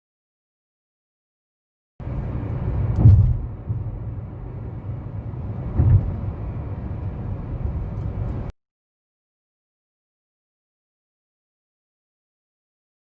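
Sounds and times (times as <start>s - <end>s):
vehicle rumble: 2.0s - 8.6s
heavy thumps: 2.9s - 4.0s.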